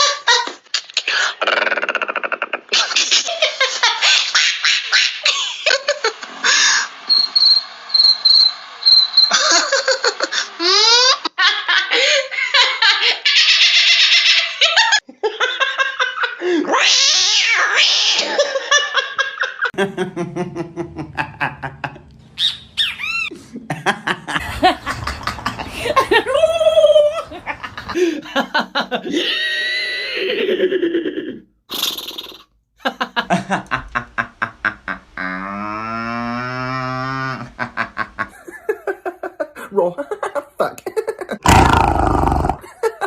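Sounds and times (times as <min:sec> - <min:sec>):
comic noises: 0:19.8 - 0:28.2, 0:41.4 - 0:42.6
animal calls: 0:22.3 - 0:23.3
bursts of laughter: 0:23.0 - 0:31.4.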